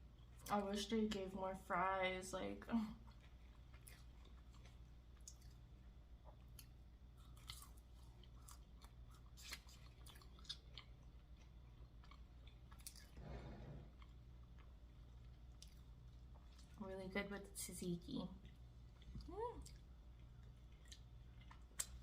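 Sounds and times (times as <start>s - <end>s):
person chewing: 3.0s - 16.8s, 18.4s - 22.0s.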